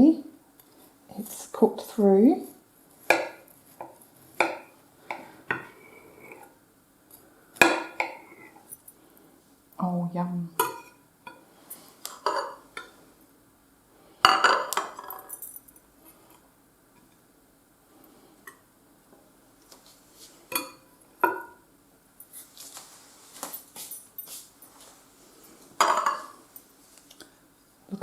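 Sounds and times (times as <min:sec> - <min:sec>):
cutlery clinking on crockery: 0:10.6 - 0:11.4, 0:12.1 - 0:13.0, 0:14.3 - 0:15.7, 0:20.5 - 0:21.6, 0:25.8 - 0:26.4.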